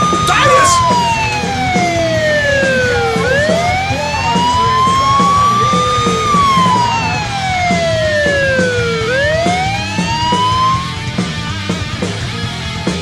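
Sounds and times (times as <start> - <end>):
siren wailing: 0.0 - 11.0.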